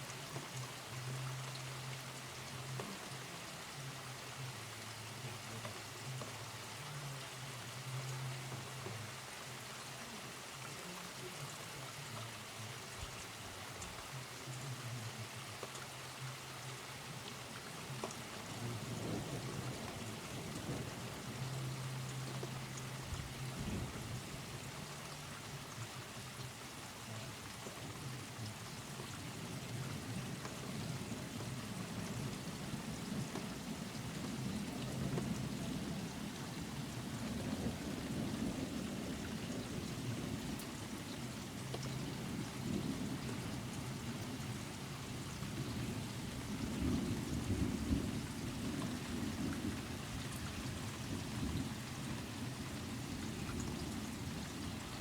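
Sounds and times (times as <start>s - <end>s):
steady rain falling: 0.0s - 55.0s
low rumbles of thunder: 18.4s - 25.2s, 29.3s - 55.0s.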